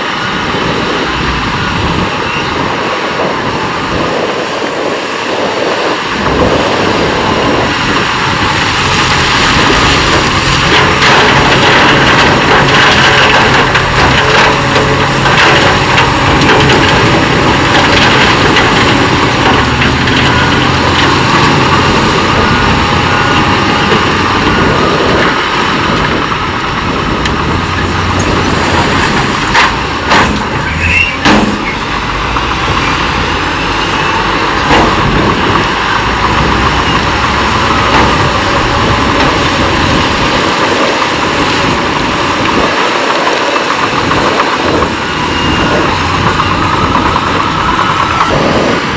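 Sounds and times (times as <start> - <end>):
heavy earthmoving machinery running: 0.0 - 48.9
sharp knocks and clanks: 9.6 - 22.2, 27.2 - 33.1.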